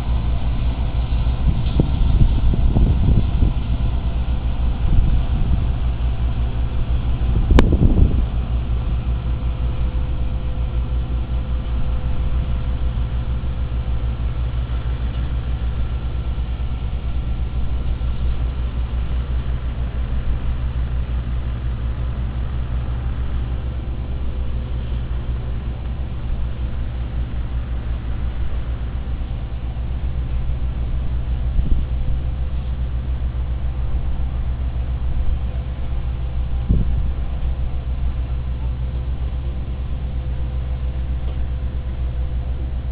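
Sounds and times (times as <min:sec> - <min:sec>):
road roller diesel engine rumbling: 0:00.0 - 0:42.9.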